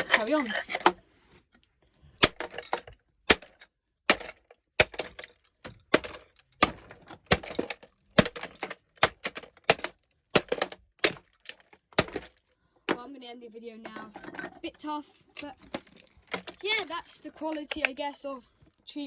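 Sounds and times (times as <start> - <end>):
hammer smashing plastic: 2.2 - 13.1, 15.4 - 18.1.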